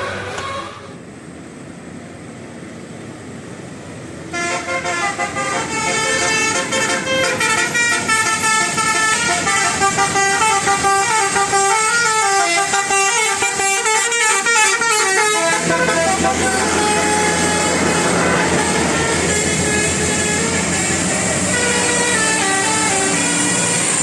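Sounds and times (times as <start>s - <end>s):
engine rumble: 0.0s - 24.0s
musical air horn tune: 4.3s - 24.0s.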